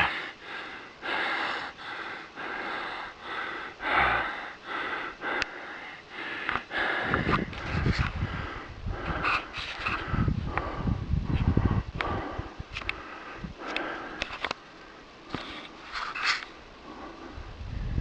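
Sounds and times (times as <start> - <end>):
man breathing heavily: 0.0 - 15.8, 16.7 - 18.0
low rumble: 10.0 - 12.7.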